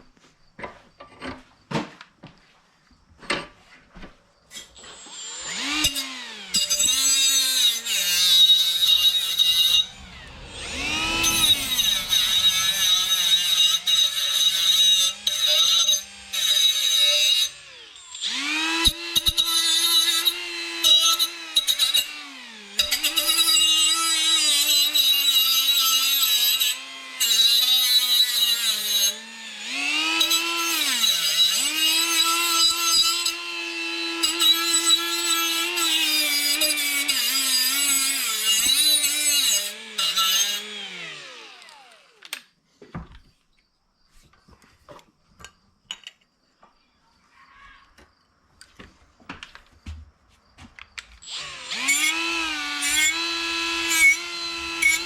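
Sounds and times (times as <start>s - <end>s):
power tool on sheet metal: 4.6s - 42.5s, 51.2s - 55.0s.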